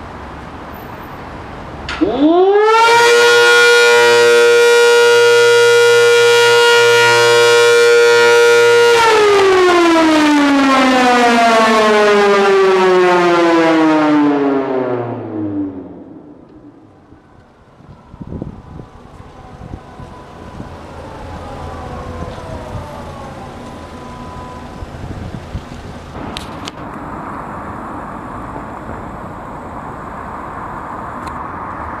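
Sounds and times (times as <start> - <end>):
low traffic rumble: 0.0 - 32.0
siren winding down: 1.9 - 26.0
steady rushing noise: 14.5 - 32.0.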